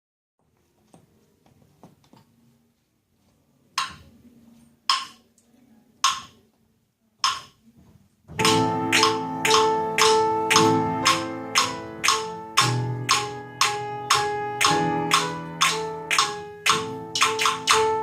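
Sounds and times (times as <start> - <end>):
sharp percussion strikes: 8.4 - 18.0.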